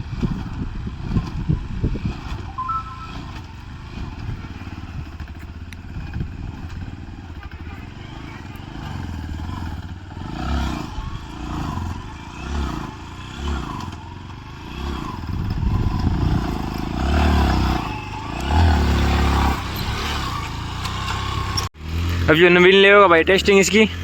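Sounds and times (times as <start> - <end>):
vehicle engine revving: 3.3 - 22.4
engine clatter: 3.4 - 24.0.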